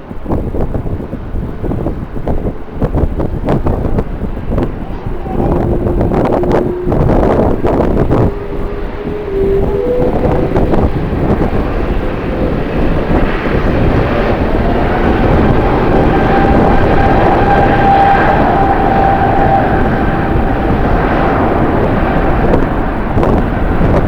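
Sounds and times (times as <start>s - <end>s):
jet engines roaring: 0.0s - 24.0s.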